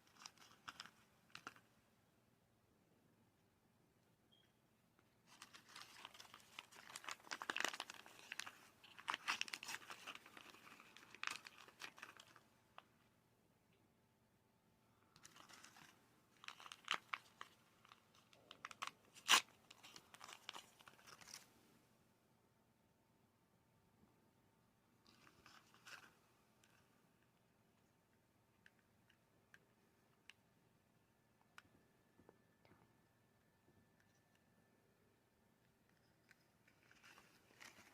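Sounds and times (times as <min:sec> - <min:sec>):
plastic packaging crinkling: 0:00.0 - 0:01.7, 0:05.2 - 0:12.5, 0:15.2 - 0:21.5, 0:36.2 - 0:37.9.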